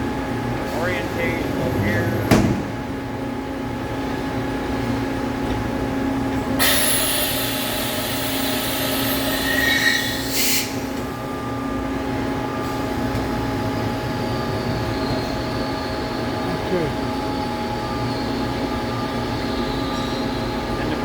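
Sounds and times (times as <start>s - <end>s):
machine hum: 6.3s - 11.7s
loud hiss: 6.6s - 10.8s.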